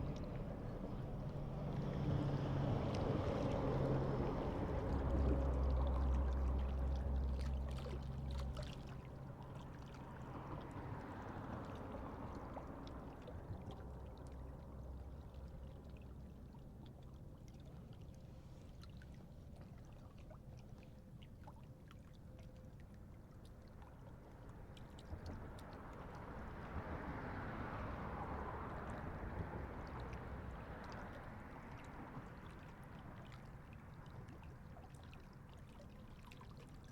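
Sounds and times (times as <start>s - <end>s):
motorboat engine humming: 0.0s - 19.7s.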